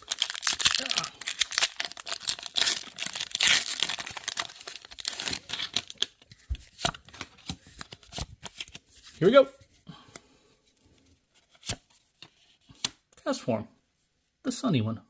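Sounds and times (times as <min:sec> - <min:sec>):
foil wrapper crinkling and tearing: 0:00.0 - 0:07.2.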